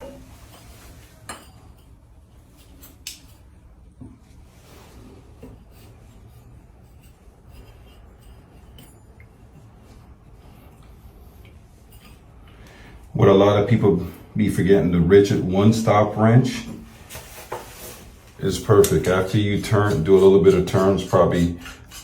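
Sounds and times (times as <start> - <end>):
metal plumbing parts clinking: 6.5 - 12.7.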